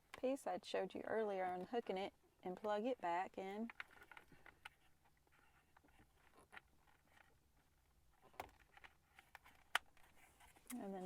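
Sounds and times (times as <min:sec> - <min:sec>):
faint clicks of plastic parts: 0:03.6 - 0:11.0.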